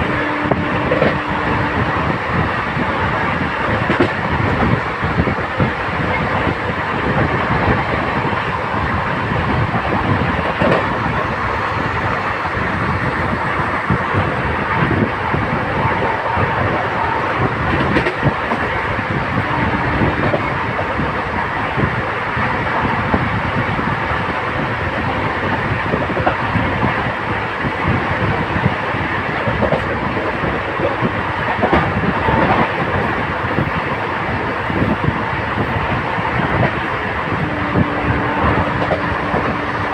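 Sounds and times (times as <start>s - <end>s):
train wheels rumbling on rails: 0.0s - 39.9s.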